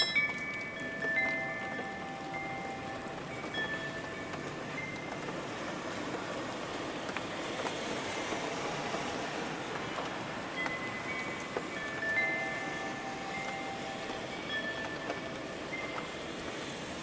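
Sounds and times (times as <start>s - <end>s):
faint chime notes: 0.0s - 5.2s, 10.6s - 16.3s
steady rain falling: 0.0s - 17.0s.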